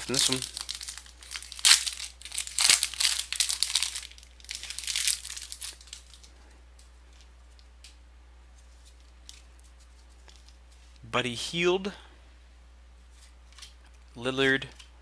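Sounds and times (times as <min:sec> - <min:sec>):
plastic wrapper tearing and crinkling: 0:00.0 - 0:06.3.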